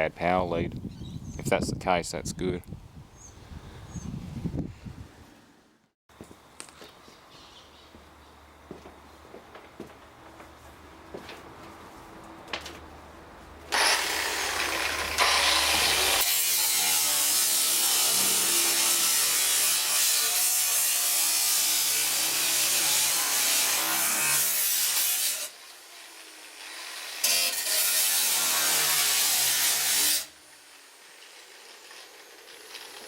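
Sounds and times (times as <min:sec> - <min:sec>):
power tool grinding: 0:13.7 - 0:30.4.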